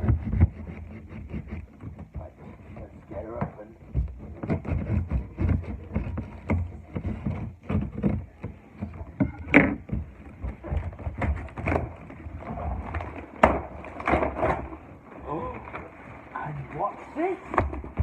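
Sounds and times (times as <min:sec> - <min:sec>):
cardboard parcel being opened: 0:10.1 - 0:18.0.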